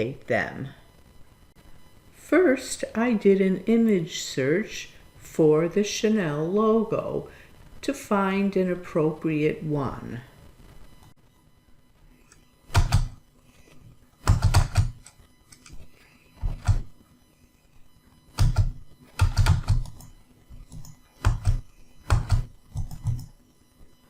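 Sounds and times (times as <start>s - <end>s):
computer keyboard keystrokes: 12.7s - 13.2s, 14.2s - 15.8s, 16.5s - 16.8s, 18.4s - 23.3s.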